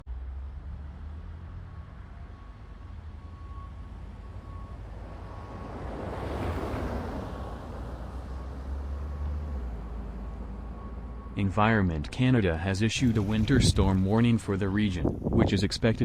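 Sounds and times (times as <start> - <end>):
storm wind on microphone: 13.0 - 16.0.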